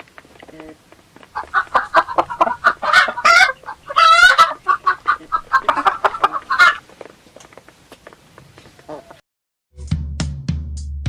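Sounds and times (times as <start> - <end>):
chickens clucking: 0.0 - 8.0, 8.6 - 9.2
chicken squawk: 1.4 - 6.8, 8.8 - 9.2.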